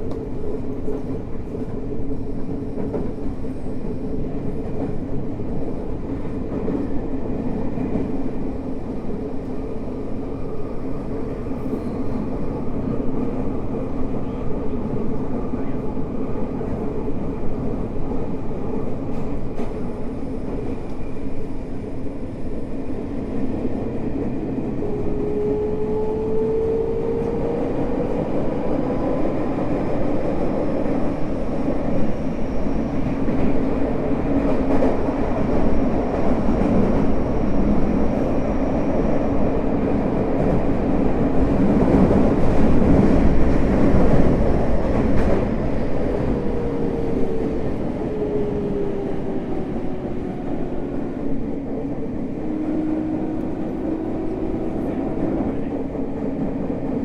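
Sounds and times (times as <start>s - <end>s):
subway train wheels rumbling on rail: 0.0s - 57.0s.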